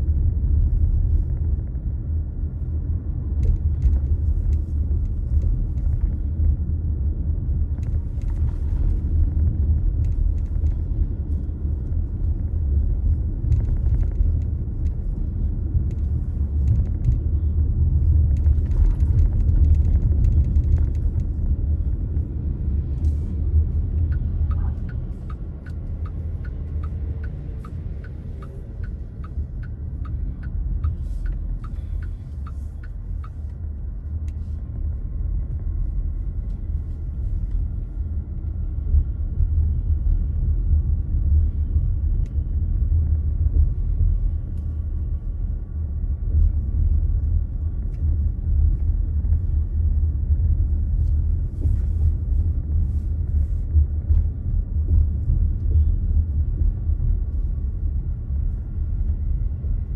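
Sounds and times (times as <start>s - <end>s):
car road and engine rumble: 0.0s - 59.9s
turn signal ticking: 22.8s - 35.0s.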